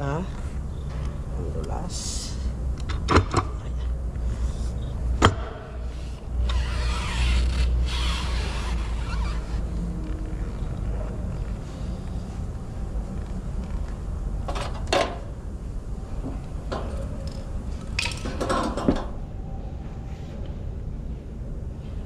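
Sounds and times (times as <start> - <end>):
steady low hum: 0.0 - 22.0
metal tools clinking: 16.8 - 18.9.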